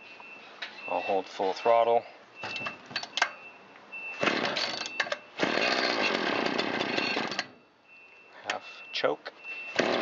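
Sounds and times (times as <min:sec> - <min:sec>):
string trimmer engine pull-started: 0:09.8 - 0:10.0.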